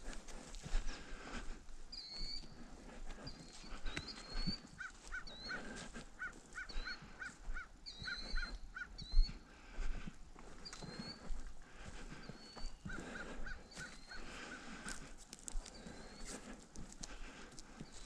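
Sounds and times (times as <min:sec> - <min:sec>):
footsteps crunching on ground: 0:00.0 - 0:18.0
birds chirping: 0:00.3 - 0:18.0
short low bird calls: 0:03.2 - 0:09.5, 0:12.1 - 0:14.7.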